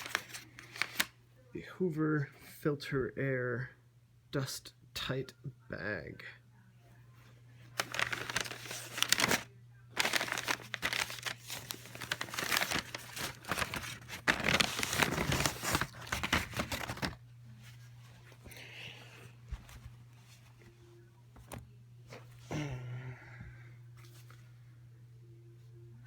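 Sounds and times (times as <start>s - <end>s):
paper packaging crinkling: 0.0s - 1.2s, 7.7s - 17.2s.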